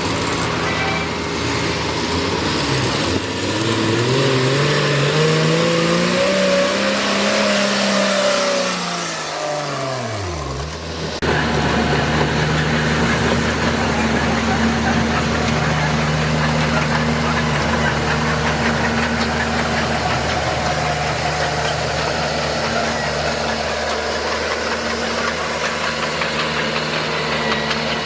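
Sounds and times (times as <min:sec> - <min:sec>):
heavy machine engine revving: 0:00.0 - 0:28.0.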